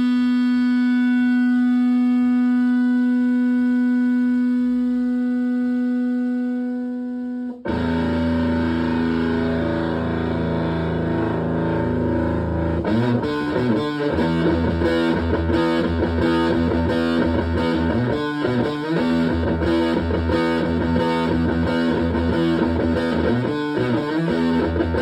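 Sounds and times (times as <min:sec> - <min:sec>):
distorted electric guitar riff: 0:00.0 - 0:25.0
fuzzy electric guitar chord: 0:00.0 - 0:25.0.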